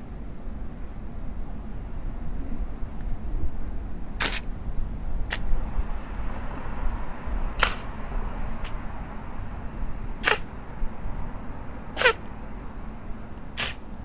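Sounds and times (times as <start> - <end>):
steady low rumble: 0.0 - 14.0
stork coughing: 7.6 - 7.9, 10.2 - 10.4, 12.0 - 12.2, 13.6 - 13.8.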